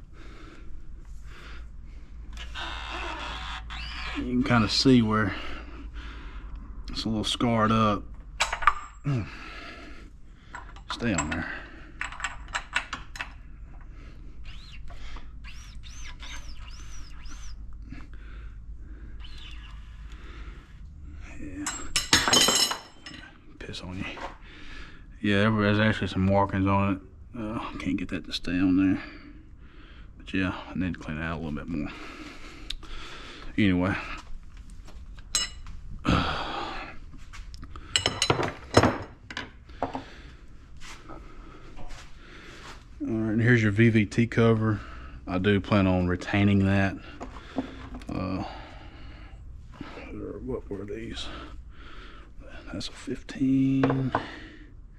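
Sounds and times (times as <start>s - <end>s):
metal tools clinking: 10.5s - 13.4s, 21.6s - 23.3s, 35.3s - 35.7s, 37.9s - 39.1s
small bird chirping: 14.4s - 17.6s, 19.2s - 20.0s.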